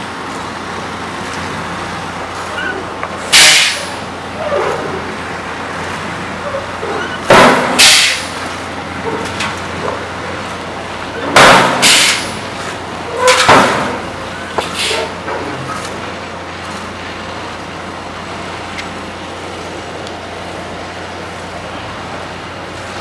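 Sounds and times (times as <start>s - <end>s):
heavy engines running: 0.0s - 23.0s
air brake hisses: 3.3s - 4.0s, 7.8s - 8.4s, 11.8s - 12.4s.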